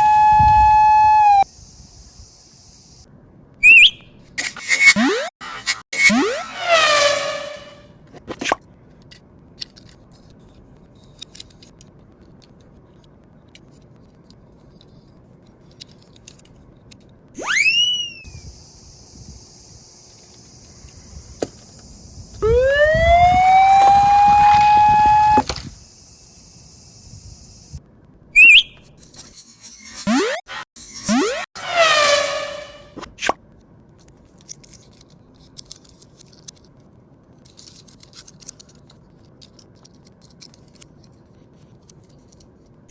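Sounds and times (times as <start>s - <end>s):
cartoon rising whistle glides: 0.0s - 1.5s, 3.6s - 4.0s, 4.7s - 5.3s, 6.0s - 7.8s, 17.4s - 18.4s, 22.4s - 25.4s, 28.4s - 28.8s, 30.1s - 33.0s
siren winding up: 0.0s - 1.5s, 3.6s - 5.3s, 6.0s - 7.8s, 17.4s - 18.5s, 22.3s - 25.8s, 29.9s - 33.0s
high hiss: 1.5s - 3.0s, 17.6s - 22.4s.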